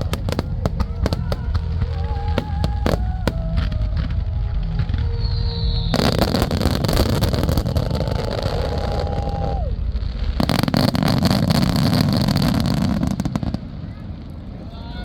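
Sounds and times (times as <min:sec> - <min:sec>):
low rumbling booms: 0:00.0 - 0:14.7
fireworks crackling: 0:00.0 - 0:15.0.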